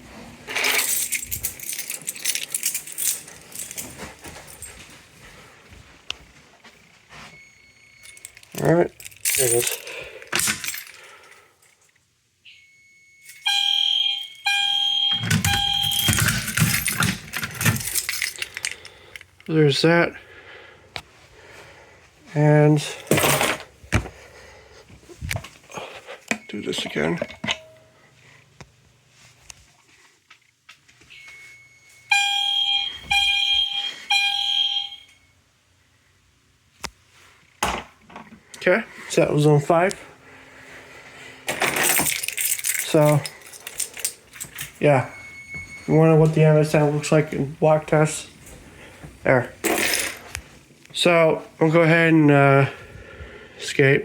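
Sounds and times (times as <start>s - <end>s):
rattling handling noise: 0.4s - 5.0s, 8.0s - 11.4s, 15.2s - 19.5s, 26.3s - 27.9s, 41.4s - 45.8s
fire alarm horn blasts: 12.4s - 16.3s, 31.1s - 35.4s.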